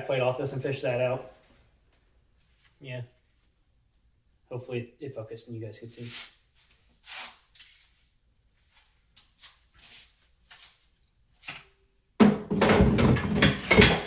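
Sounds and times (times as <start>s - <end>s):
faint rustles and light clicks: 1.3s - 4.1s.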